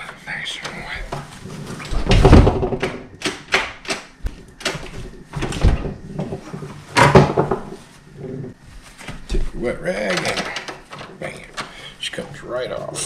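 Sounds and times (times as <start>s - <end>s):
tools knocking on wooden door: 2.0s - 4.0s, 7.0s - 7.7s.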